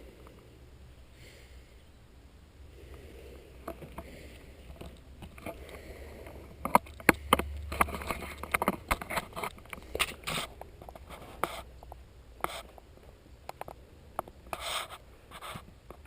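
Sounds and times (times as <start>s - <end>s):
floorboards cracking and creaking: 3.7s - 12.6s.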